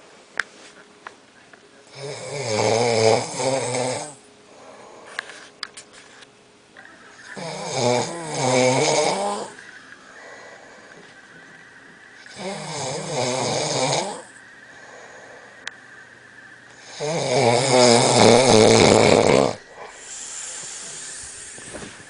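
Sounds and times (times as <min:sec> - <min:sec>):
person snoring: 0:01.9 - 0:05.1, 0:07.3 - 0:11.0, 0:12.2 - 0:15.6, 0:16.8 - 0:22.0
quiet breathing: 0:04.1 - 0:06.2, 0:08.3 - 0:17.3, 0:18.0 - 0:22.0.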